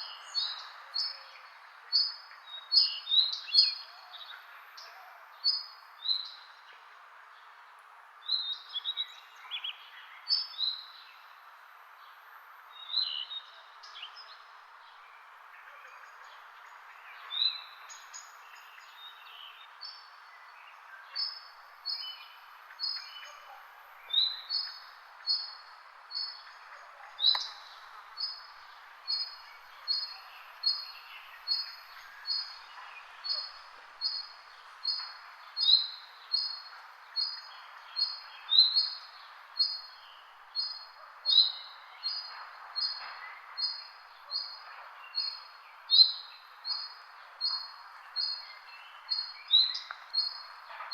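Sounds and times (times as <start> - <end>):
steady background hiss: 0.0 - 50.9
birds chirping: 15.0 - 50.9.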